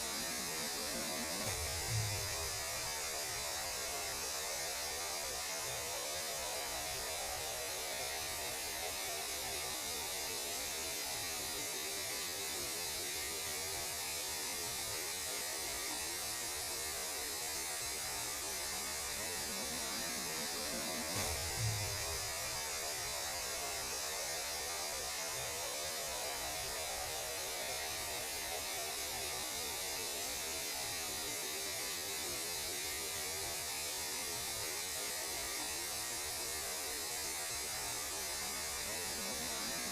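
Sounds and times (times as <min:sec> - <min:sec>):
radio noise hiss and hum: 0:00.0 - 0:13.7, 0:18.0 - 0:31.5, 0:37.4 - 0:39.9
low thump: 0:01.4 - 0:02.6, 0:21.1 - 0:22.5.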